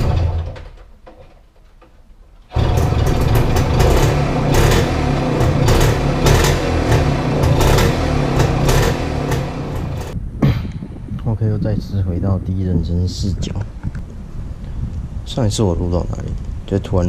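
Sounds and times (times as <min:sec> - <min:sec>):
small engine with rattly ticking: 0:02.5 - 0:10.2.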